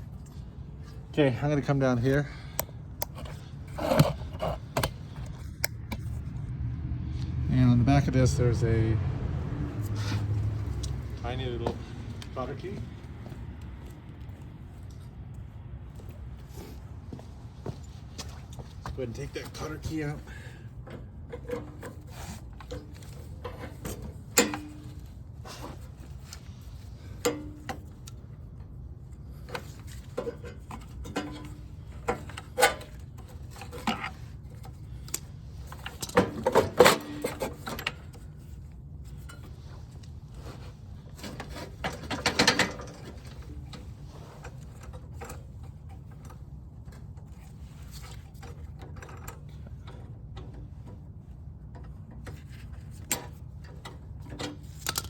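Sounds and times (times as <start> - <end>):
hand tools clicking on metal parts: 52.4 - 55.0.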